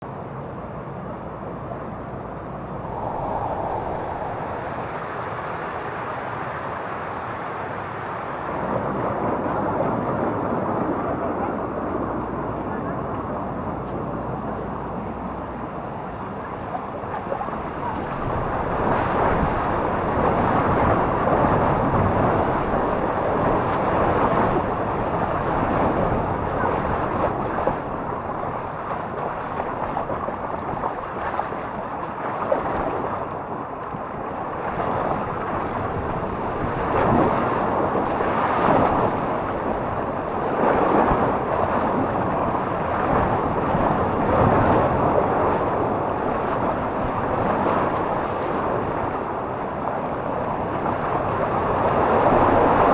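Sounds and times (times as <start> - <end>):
wind buffeting microphone: 0.0 - 52.9.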